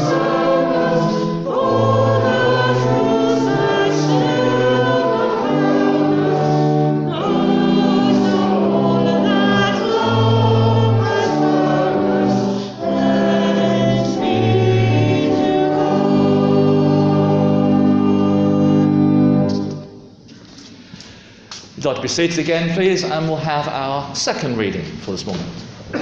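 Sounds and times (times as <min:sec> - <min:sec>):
choir singing a hymn: 0:00.0 - 0:20.1
accompaniment: 0:00.0 - 0:21.0.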